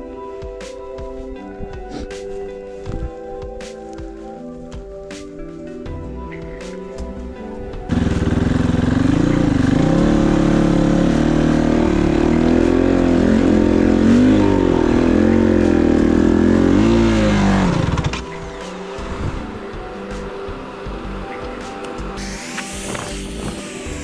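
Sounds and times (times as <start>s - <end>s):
motorcycle engine revving: 7.9s - 18.3s, 22.2s - 24.0s.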